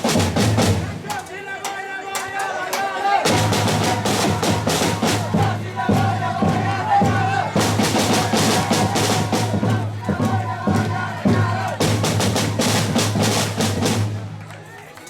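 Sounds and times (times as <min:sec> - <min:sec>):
drum-heavy percussion music: 0:00.0 - 0:14.5.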